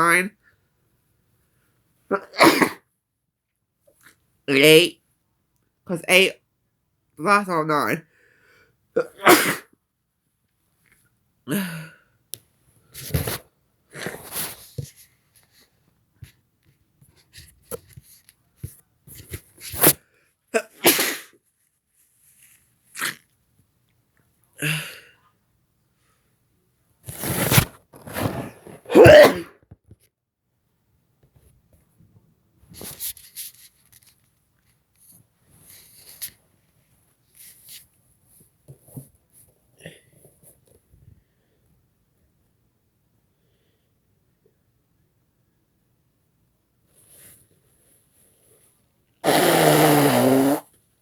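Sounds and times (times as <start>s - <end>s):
person sneezing: 2.1s - 2.8s, 9.0s - 9.7s, 20.6s - 21.4s, 28.8s - 29.6s, 49.2s - 50.7s.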